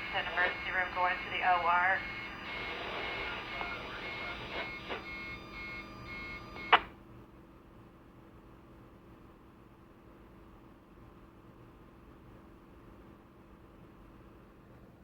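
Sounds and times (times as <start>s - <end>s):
radio static hiss: 0.0s - 5.2s
faint interference beep: 0.0s - 6.9s.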